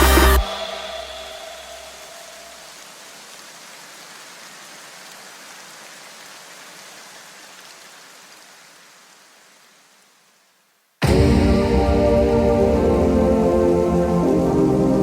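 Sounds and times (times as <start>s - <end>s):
music: 0.0s - 1.8s, 11.0s - 15.0s
steady even hiss: 0.0s - 15.0s.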